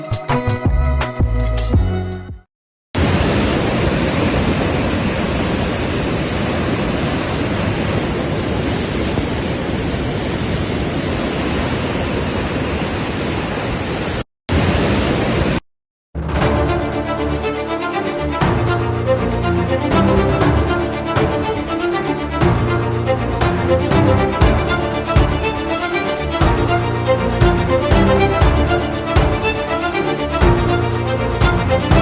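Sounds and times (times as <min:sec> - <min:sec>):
music: 0:00.0 - 0:02.5, 0:16.2 - 0:32.0
loud steady rushing noise: 0:03.0 - 0:15.6, 0:24.0 - 0:32.0.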